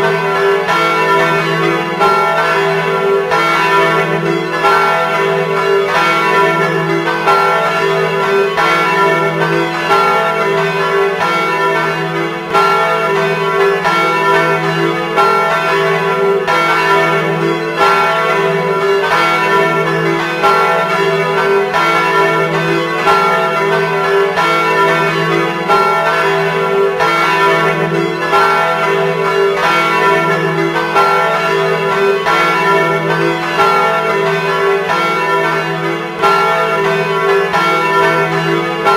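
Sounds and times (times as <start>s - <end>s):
church bells pealing: 0.0s - 38.9s.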